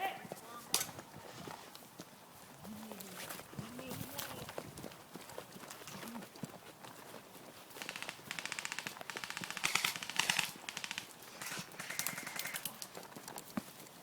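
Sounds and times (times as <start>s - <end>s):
airsoft guns firing bursts: 7.7s - 12.8s.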